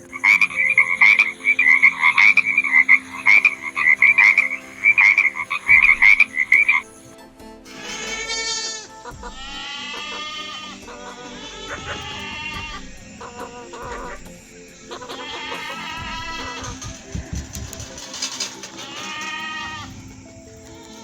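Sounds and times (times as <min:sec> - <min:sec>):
frog croaking: 0:00.0 - 0:07.1, 0:07.8 - 0:21.0
goat bleating: 0:07.7 - 0:14.3, 0:15.0 - 0:16.9, 0:18.7 - 0:19.9.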